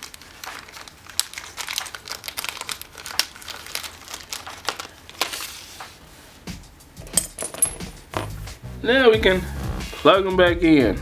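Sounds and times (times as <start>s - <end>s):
plastic baggie crinkling: 0.0s - 5.6s.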